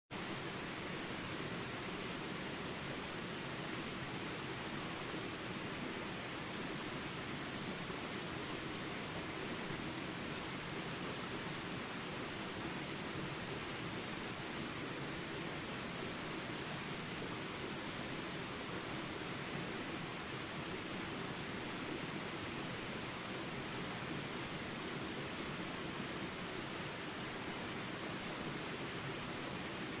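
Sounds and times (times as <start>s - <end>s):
outdoor background hiss: 0.1s - 30.0s.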